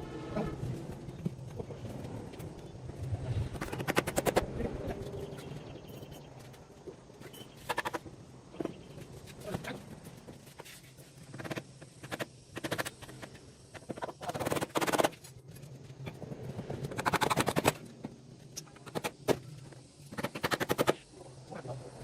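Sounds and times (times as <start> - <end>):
low steady hum: 0.0 - 13.7.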